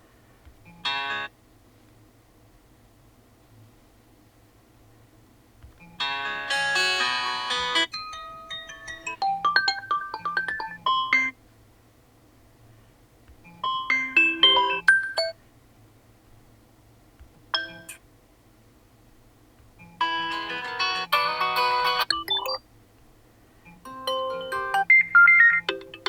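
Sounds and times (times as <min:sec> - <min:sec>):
electronic ringtone melodies: 0:06.0 - 0:11.4, 0:13.6 - 0:15.4, 0:20.0 - 0:22.6, 0:23.8 - 0:26.0.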